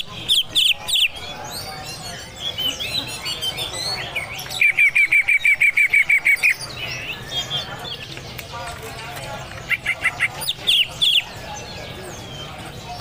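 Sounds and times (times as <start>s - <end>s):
bird singing chirps and whistles: 0.0s - 8.1s.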